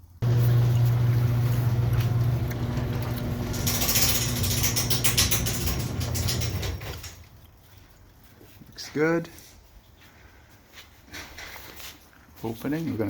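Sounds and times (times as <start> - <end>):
garage door opener motor humming: 0.1 - 7.2
door rattling in track: 0.2 - 7.2.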